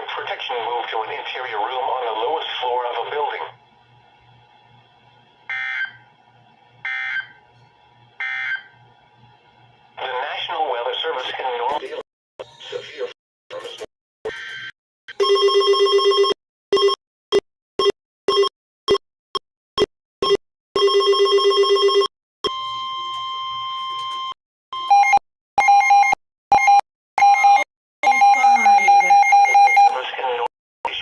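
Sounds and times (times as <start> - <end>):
steady electronic beep: 24.2 - 30.0.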